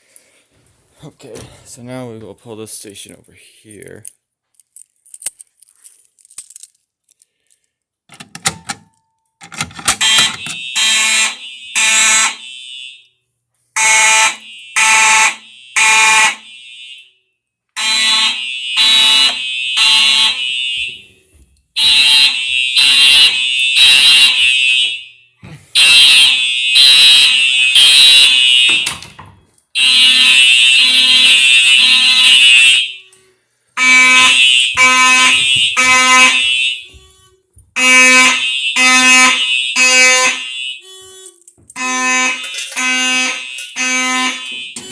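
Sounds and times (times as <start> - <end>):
fire alarm horns: 8.1 - 29.1, 29.7 - 44.9.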